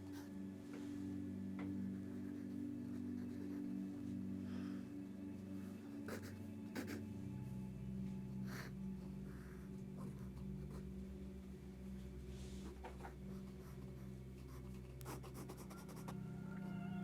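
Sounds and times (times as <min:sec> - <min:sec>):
low electrical hum: 0:00.0 - 0:17.0
pencil scratching on paper: 0:06.1 - 0:07.1, 0:12.6 - 0:16.2.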